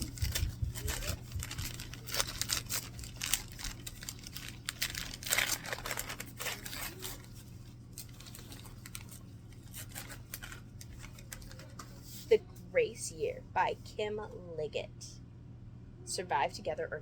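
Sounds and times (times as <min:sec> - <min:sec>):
paper tearing and crumpling: 0:00.0 - 0:12.3.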